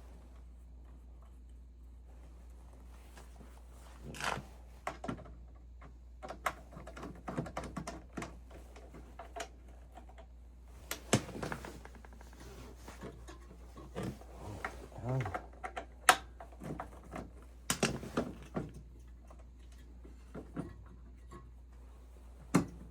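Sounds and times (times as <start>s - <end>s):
steady low hum: 10.6s - 15.6s.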